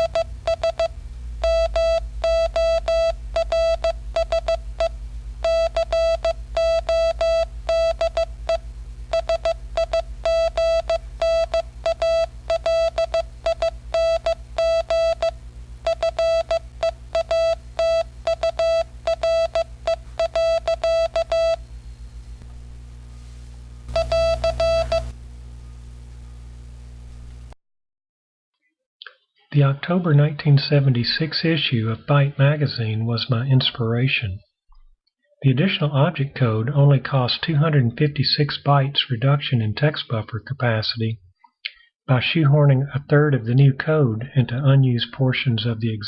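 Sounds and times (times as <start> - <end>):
morse code tone: 0.0 - 22.4, 23.9 - 25.2
steady low hum: 0.0 - 27.6.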